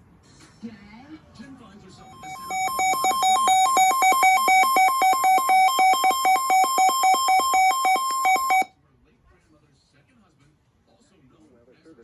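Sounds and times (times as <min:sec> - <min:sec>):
fast two-pitch electronic beeping: 0:02.1 - 0:08.7.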